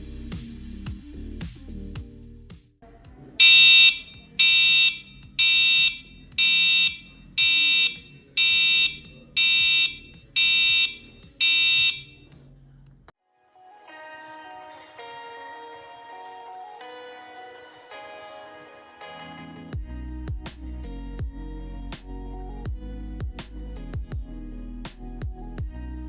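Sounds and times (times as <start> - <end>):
truck reversing beeper: 3.4 - 12.2.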